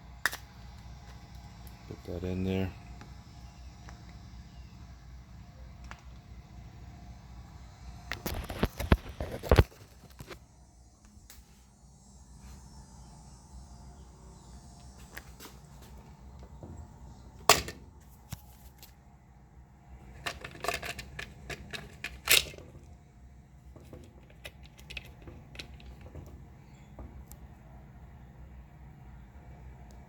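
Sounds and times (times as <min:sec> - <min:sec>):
plastic parts clicking and knocking: 0:20.0 - 0:22.9, 0:23.7 - 0:26.4.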